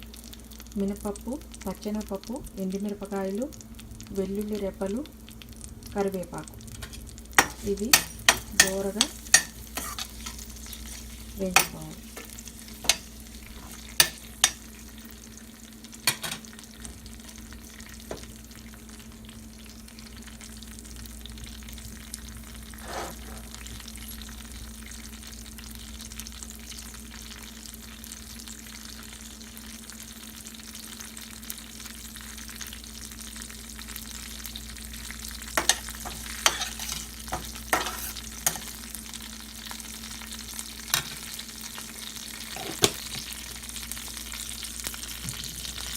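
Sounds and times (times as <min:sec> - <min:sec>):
spices sizzling in hot oil: 0:00.0 - 0:45.9
steady low hum: 0:00.6 - 0:24.8.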